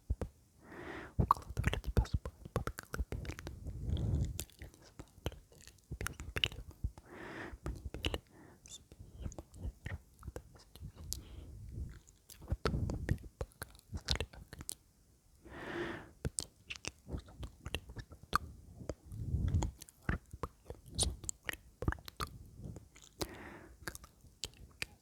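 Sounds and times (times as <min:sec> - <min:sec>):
short breathy sounds: 0:00.6 - 0:01.3, 0:07.0 - 0:09.3, 0:15.4 - 0:16.2, 0:23.2 - 0:23.8
wet lip and tongue clicks: 0:01.2 - 0:11.3, 0:11.9 - 0:14.8, 0:16.2 - 0:25.0.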